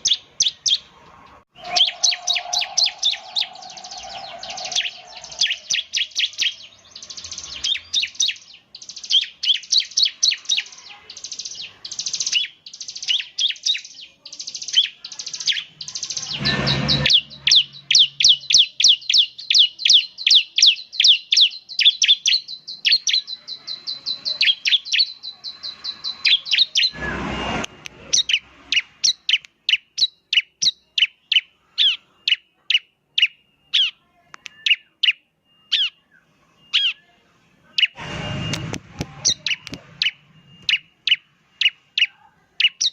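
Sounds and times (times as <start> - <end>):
bird chirping: 0.0 - 42.9
bird trill: 0.0 - 42.9
noise bursts: 1.5 - 5.8, 16.1 - 17.8, 25.6 - 29.0, 38.0 - 41.4.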